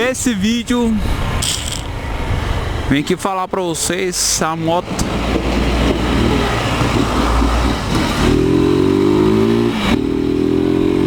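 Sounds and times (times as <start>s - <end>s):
motorcycle engine running: 5.8s - 11.0s.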